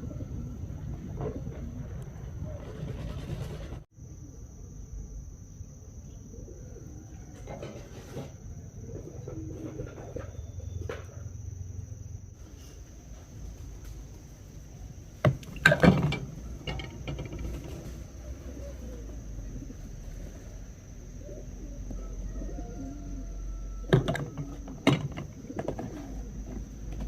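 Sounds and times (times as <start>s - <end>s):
low background rumble: 0.0s - 3.9s
steady high-pitched whine: 0.0s - 27.0s
sharp knocks and clatters: 15.2s - 18.0s, 23.9s - 27.0s.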